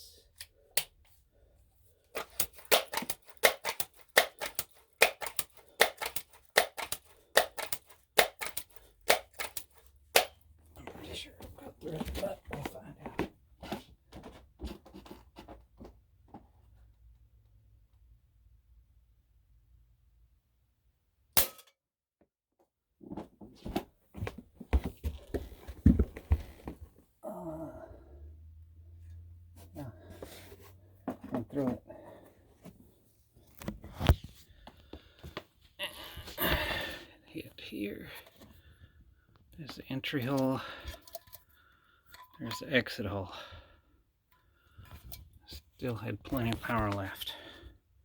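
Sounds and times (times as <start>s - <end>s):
air rifle pump clacking: 2.2s - 10.4s.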